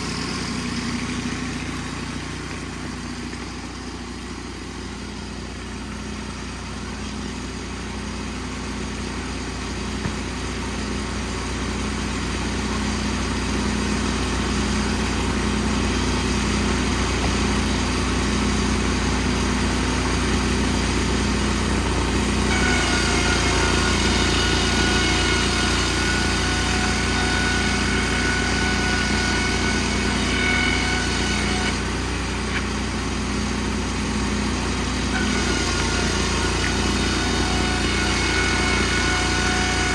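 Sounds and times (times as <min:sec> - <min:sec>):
high steady whine: 0:00.0 - 0:39.9
sawmill engine running: 0:00.0 - 0:39.9.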